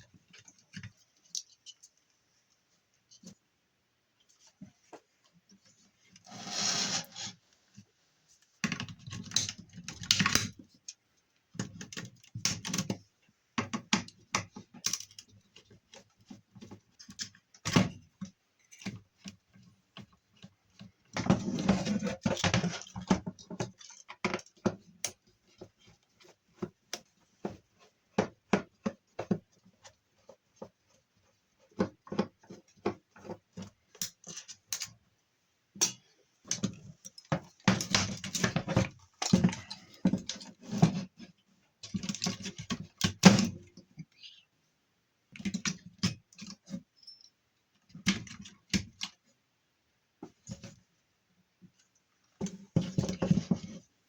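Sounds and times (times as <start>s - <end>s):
scraping and rubbing: 5.7s - 7.5s.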